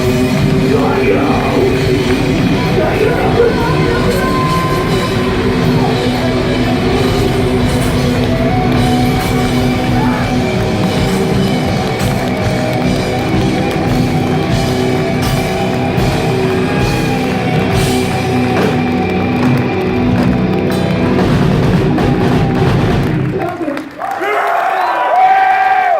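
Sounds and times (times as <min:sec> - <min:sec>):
electric guitars playing chords: 0:00.0 - 0:23.5
drum kit: 0:00.0 - 0:23.6.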